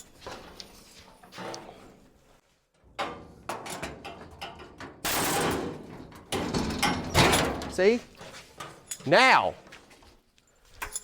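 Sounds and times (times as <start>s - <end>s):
sheet metal knocks and scrapes: 2.8s - 8.9s.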